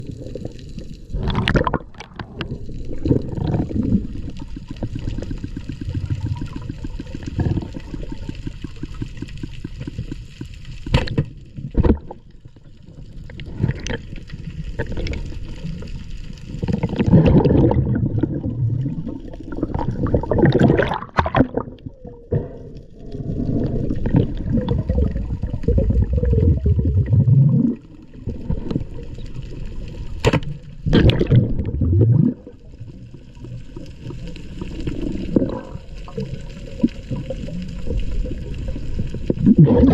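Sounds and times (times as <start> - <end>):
water gurgling and churning: 0.0 - 9.3, 16.5 - 39.9.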